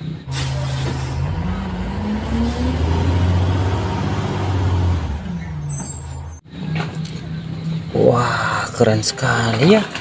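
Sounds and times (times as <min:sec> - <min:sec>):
heavy truck engine running: 0:00.0 - 0:08.0.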